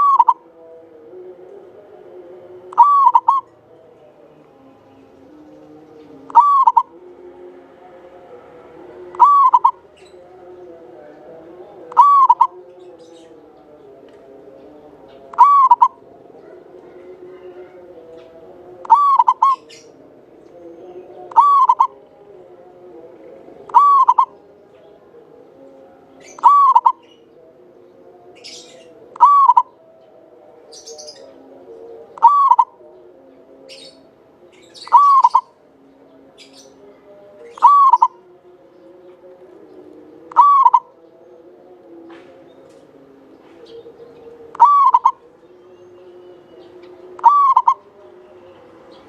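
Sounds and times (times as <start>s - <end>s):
dove cooing: 0.0s - 0.4s, 2.7s - 3.5s, 6.3s - 6.9s, 9.1s - 9.9s, 11.8s - 12.6s, 15.3s - 17.9s, 18.8s - 20.0s, 21.0s - 22.0s, 23.4s - 24.4s, 26.2s - 27.2s, 28.4s - 29.9s, 32.1s - 32.8s, 34.8s - 35.6s, 37.5s - 38.3s, 40.2s - 41.6s, 43.5s - 49.0s.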